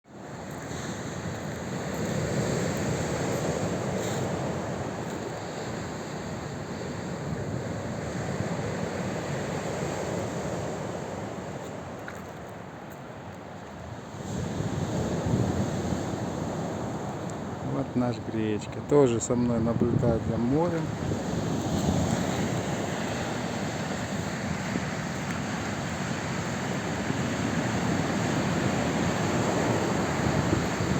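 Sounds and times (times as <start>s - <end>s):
sea waves washing in: 0.1s - 30.9s
wind rumbling on microphone: 13.9s - 17.6s, 19.4s - 30.9s.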